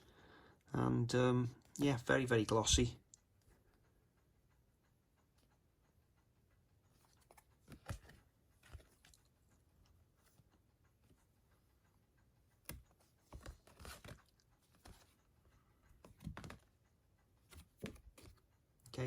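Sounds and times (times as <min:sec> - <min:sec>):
soft rustles and taps of cards: 0:06.9 - 0:11.3, 0:12.6 - 0:19.0.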